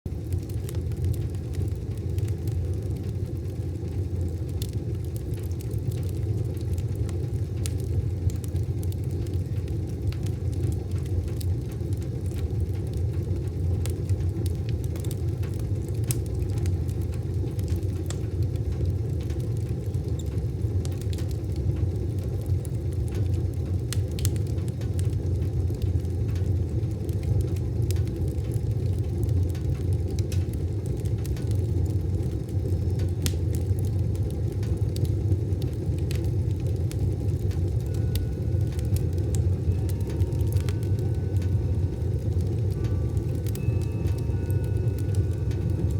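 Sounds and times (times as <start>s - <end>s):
fire rumbling in wood stove: 0.0s - 45.9s
fire crackles and pops: 0.1s - 45.9s.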